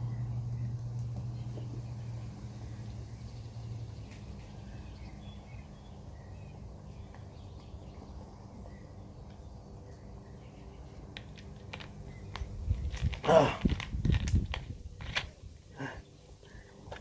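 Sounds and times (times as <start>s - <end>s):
outdoor background noise: 0.0s - 17.0s.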